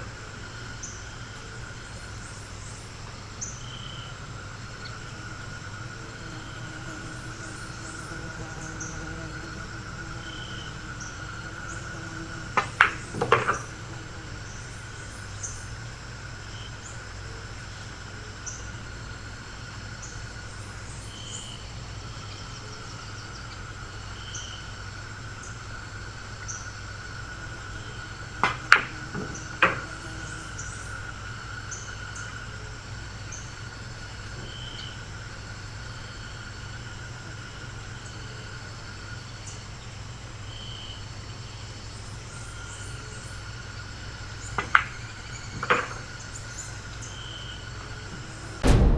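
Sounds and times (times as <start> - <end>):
pool balls clacking: 12.4 - 14.2, 27.9 - 30.4, 44.2 - 46.9.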